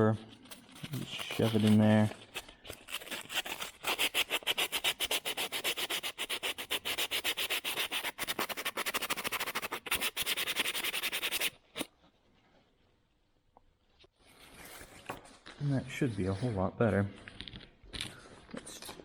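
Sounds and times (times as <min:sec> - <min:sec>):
sandpaper scratching on metal contacts: 0:00.3 - 0:11.9.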